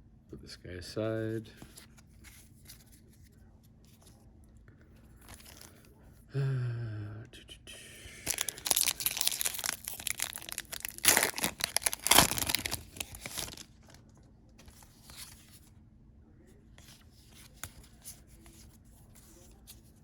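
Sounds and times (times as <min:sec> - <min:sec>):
foil wrapper tearing and crinkling: 0:08.2 - 0:14.0.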